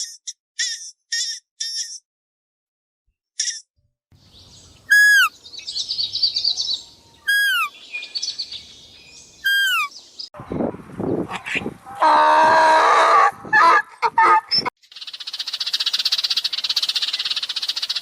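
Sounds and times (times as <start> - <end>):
bird chirp: 4.2 - 10.3, 14.8 - 18.0
birds twittering: 4.2 - 10.3
whistled bird notes falling: 4.9 - 6.5, 7.2 - 8.6, 9.4 - 9.9.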